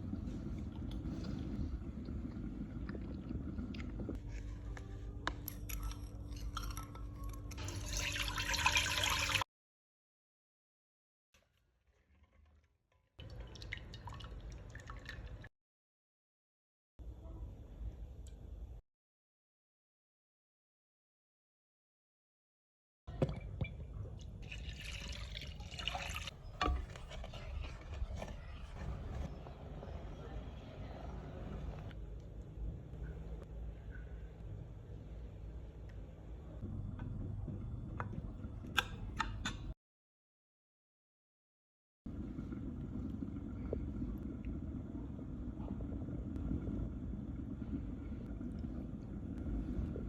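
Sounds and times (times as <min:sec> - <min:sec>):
liquid pouring and dripping: 0:06.6 - 0:09.4, 0:12.0 - 0:15.5, 0:24.2 - 0:28.5
hissing pour: 0:07.6 - 0:09.4, 0:24.4 - 0:28.2.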